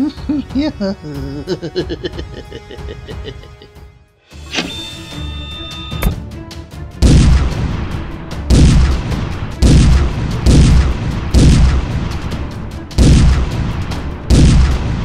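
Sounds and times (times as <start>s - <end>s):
cannon booms: 13.0s - 15.0s.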